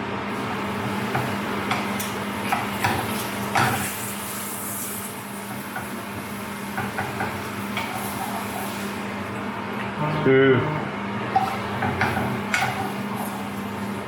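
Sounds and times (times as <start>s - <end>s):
tortillas sizzling in oil: 0.3s - 9.3s.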